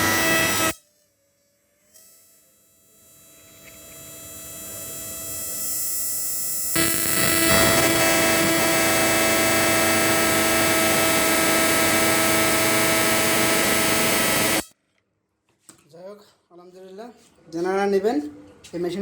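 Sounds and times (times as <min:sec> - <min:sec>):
electrical buzzing hum: 0:00.0 - 0:00.8, 0:01.5 - 0:14.7.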